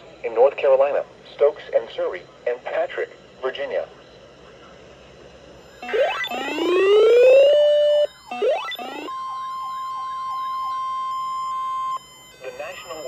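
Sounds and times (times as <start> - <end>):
steady single-pitch alarm tone: 5.4 - 13.0
rising siren-like wails: 5.6 - 13.0.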